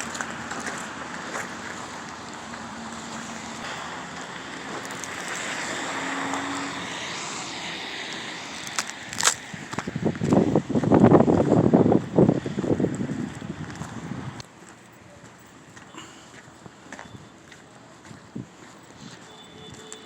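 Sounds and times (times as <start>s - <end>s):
footsteps crunching on snow: 0.0s - 7.2s, 8.1s - 20.0s
steady outdoor hiss: 0.0s - 20.0s
sharp cracks: 8.1s - 9.5s.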